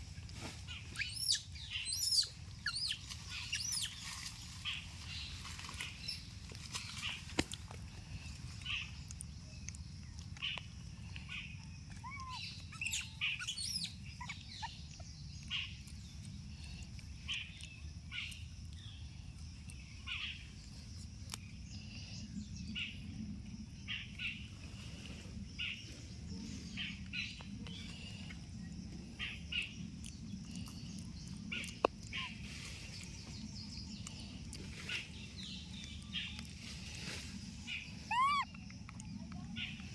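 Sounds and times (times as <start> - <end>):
birds chirping: 0.7 - 7.3, 8.2 - 19.1, 26.5 - 39.9.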